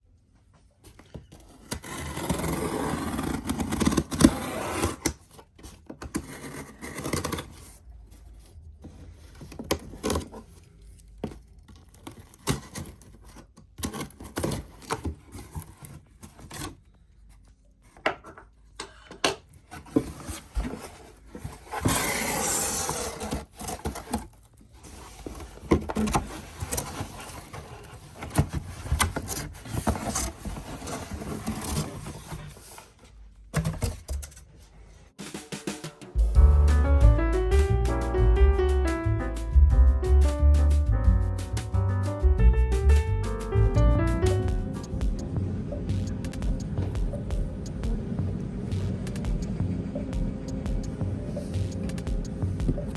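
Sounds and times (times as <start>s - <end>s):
packaging rustling and scraping: 0.9s - 18.0s, 19.6s - 35.2s.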